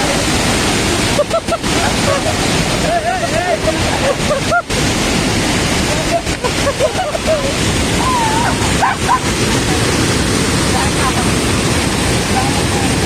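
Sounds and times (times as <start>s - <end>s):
waterfall roaring: 0.0s - 13.0s
distant voices calling: 5.7s - 13.0s.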